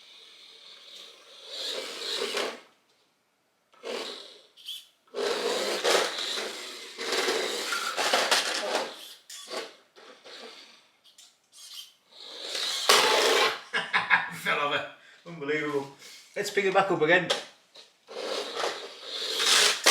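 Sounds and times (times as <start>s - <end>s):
toy truck electric motor whirring: 0.0s - 2.8s, 3.8s - 13.6s, 18.1s - 19.9s.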